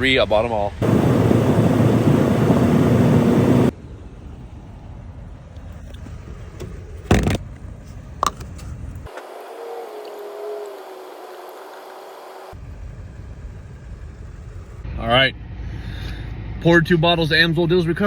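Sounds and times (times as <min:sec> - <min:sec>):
vehicle rushing and rumbling: 0:00.7 - 0:07.8.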